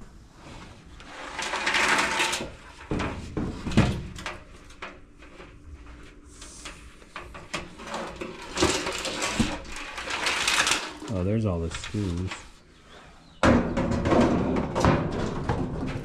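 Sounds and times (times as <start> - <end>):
rummaging through parts: 1.3 - 12.6.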